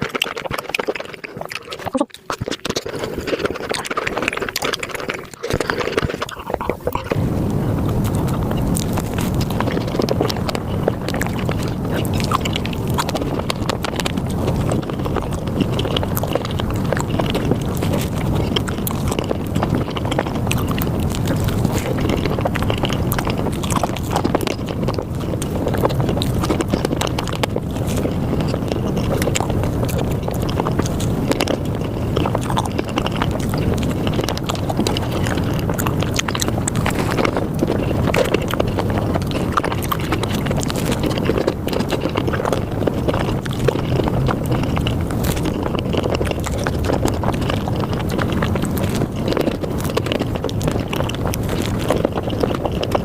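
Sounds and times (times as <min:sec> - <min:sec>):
sped-up wet chewing: 0:00.0 - 0:53.0.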